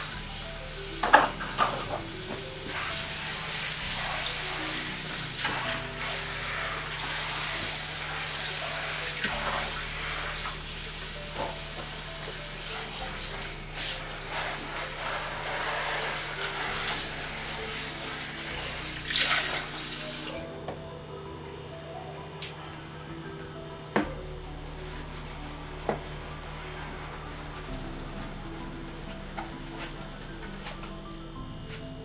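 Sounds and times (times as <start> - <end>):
soft background music: 0.0 - 32.0
tap water running into sink: 1.0 - 3.0, 17.7 - 20.4.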